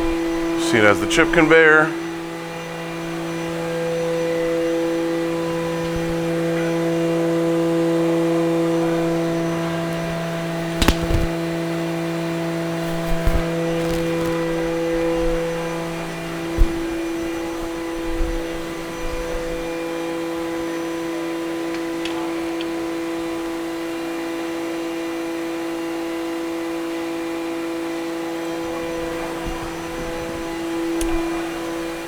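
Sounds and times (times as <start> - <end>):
machine humming: 0.0 - 32.0
faint clicks: 28.8 - 32.0.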